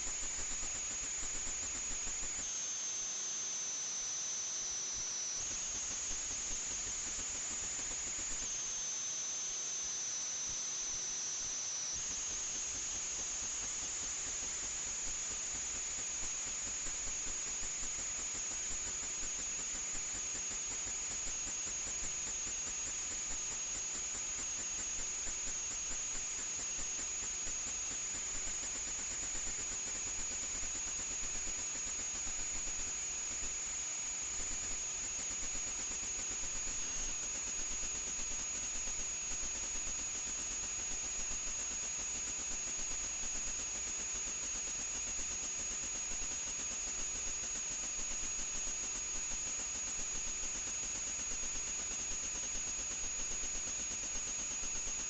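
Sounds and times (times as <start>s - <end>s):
quadcopter motors whining: 0.4s - 13.6s.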